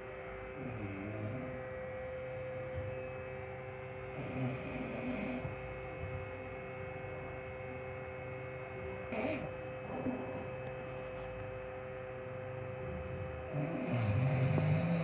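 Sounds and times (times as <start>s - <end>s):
steady electrical hum: 0.0s - 15.0s
snoring: 0.6s - 1.7s, 4.1s - 5.8s, 9.1s - 10.6s, 13.0s - 15.0s.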